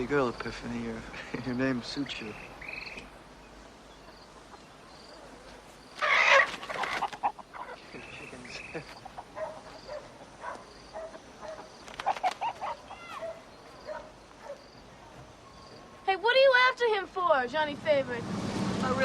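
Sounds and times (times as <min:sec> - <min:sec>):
faint regular chirping: 0:00.0 - 0:06.4, 0:07.3 - 0:16.3
chickens squawking: 0:04.0 - 0:14.6
chicken clucks: 0:06.3 - 0:10.3.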